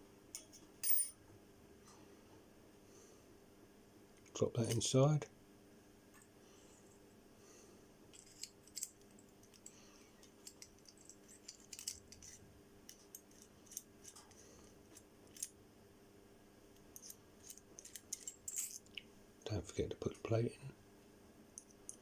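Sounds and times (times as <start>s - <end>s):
low steady hum: 0.0s - 22.0s
small metal parts clicking: 8.1s - 15.6s, 17.0s - 19.0s.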